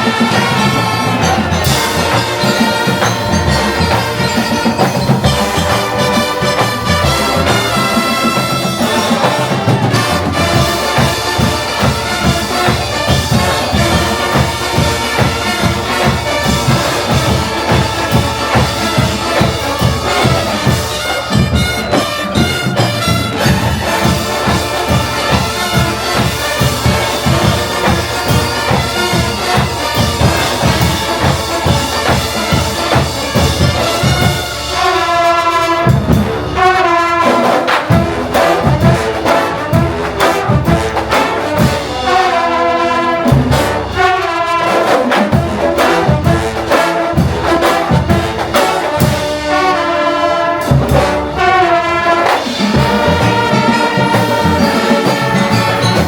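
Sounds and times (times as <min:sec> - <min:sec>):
bugles and brass chords: 0:00.0 - 0:56.0
marching drums: 0:00.0 - 0:56.0.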